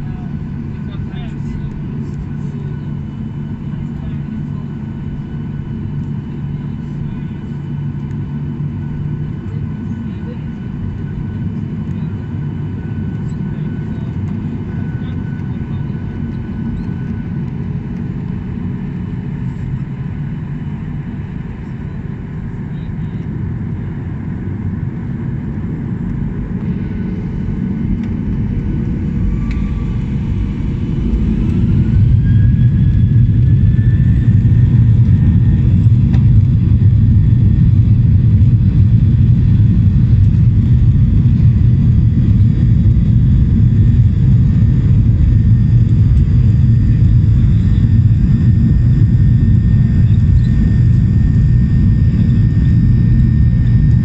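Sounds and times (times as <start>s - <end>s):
jet engines spooling up: 24.8s - 54.0s.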